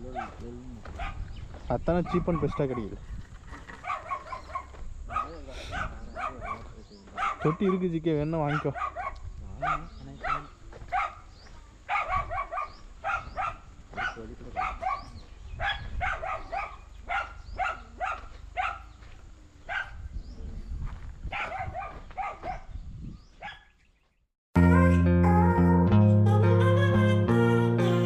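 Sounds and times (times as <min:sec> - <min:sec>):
dog barking: 0:00.0 - 0:01.3, 0:02.0 - 0:03.0, 0:03.7 - 0:11.3, 0:11.9 - 0:19.0, 0:19.6 - 0:20.0, 0:21.3 - 0:22.8, 0:23.4 - 0:23.8.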